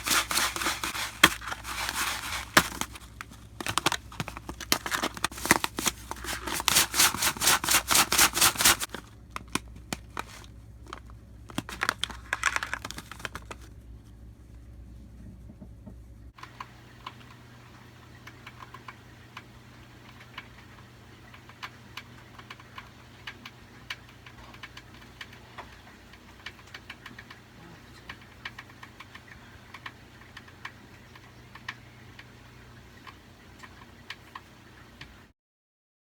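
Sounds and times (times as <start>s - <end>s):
hamster chewing seeds: 0.0s - 9.0s, 16.4s - 35.3s
steady low hum: 0.0s - 35.3s.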